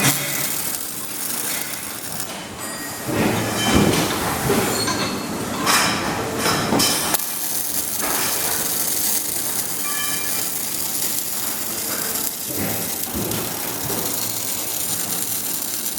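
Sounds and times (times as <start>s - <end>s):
machinery hissing noise: 0.0s - 2.3s, 7.1s - 15.9s.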